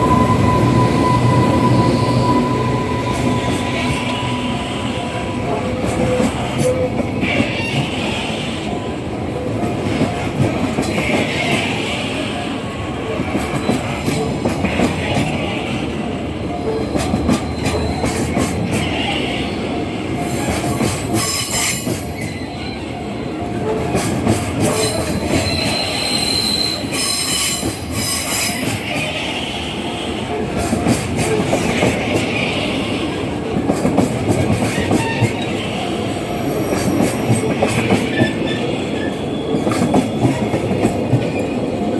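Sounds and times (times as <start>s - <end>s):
train wheels rumbling on rails: 0.0s - 41.9s
clickety-clack over rail joints: 5.6s - 12.4s, 13.1s - 19.4s, 20.1s - 26.6s, 30.3s - 35.8s, 36.5s - 41.9s
wheel squeal: 24.6s - 29.0s.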